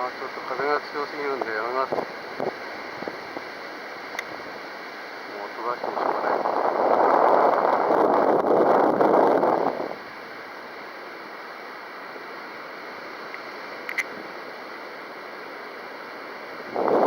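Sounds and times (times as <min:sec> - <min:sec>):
wind buffeting microphone: 0:05.6 - 0:10.0, 0:16.7 - 0:17.0.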